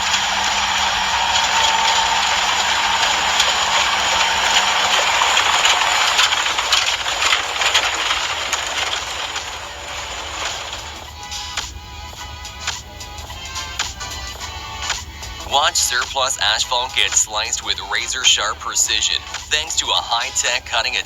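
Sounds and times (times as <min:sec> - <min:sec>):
pressure washer spraying: 0:00.0 - 0:11.4
faint steady hum: 0:00.0 - 0:21.0.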